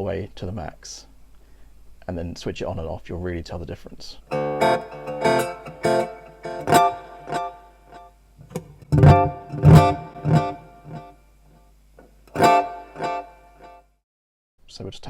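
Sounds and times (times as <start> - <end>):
acoustic guitar strumming chords: 4.3 - 13.9.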